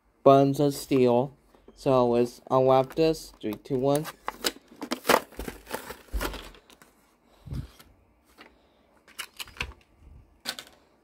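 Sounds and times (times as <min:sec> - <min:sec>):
plastic packaging tearing: 0:03.9 - 0:06.6.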